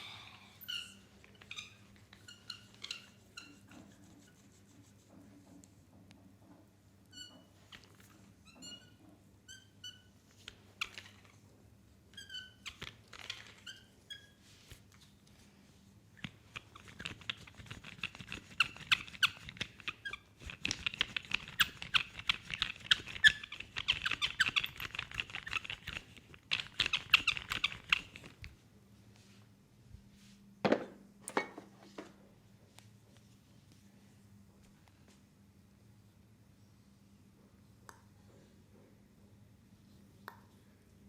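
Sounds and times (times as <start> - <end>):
palm squeaking on skin: 0.6 - 5.2, 7.1 - 11.4, 12.1 - 15.0, 16.2 - 28.4
hands rubbing and slapping skin: 1.3 - 5.8, 16.2 - 28.6.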